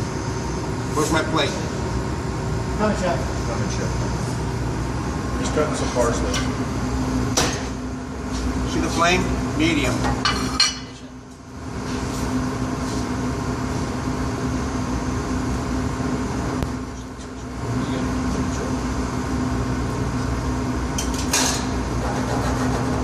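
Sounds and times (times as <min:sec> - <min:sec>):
kitchen equipment rumble and hum: 0:00.0 - 0:23.0.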